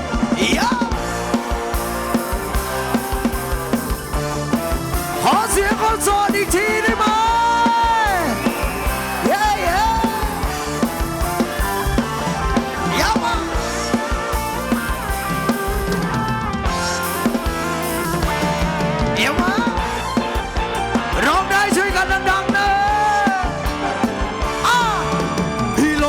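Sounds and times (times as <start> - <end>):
dance band playing upbeat music: 0.0 - 26.0
drum kit beat: 0.0 - 26.0.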